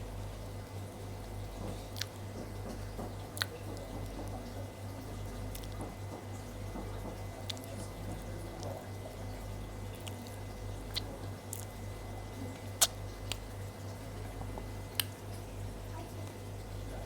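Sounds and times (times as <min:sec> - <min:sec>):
steady low hum: 0:00.0 - 0:17.0
wet chewing and squishing: 0:01.6 - 0:04.6, 0:05.2 - 0:06.2, 0:06.8 - 0:15.4
sharp mouth smacks: 0:12.8 - 0:13.4, 0:15.0 - 0:15.2.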